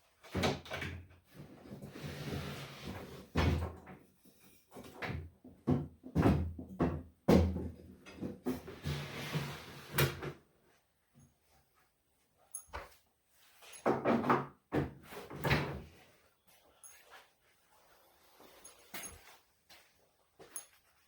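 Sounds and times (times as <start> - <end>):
thumps clunks and scrapes of tools: 12.5 - 16.0, 18.5 - 19.4.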